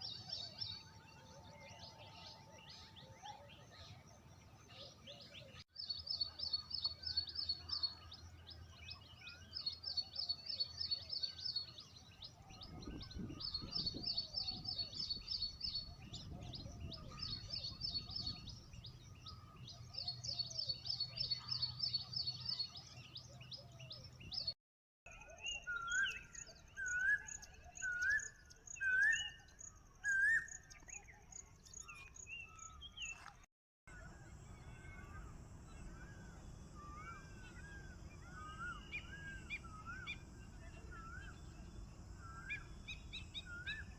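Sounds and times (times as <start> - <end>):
bird chirps: 0.0 - 43.9
bird trilling: 34.6 - 43.9.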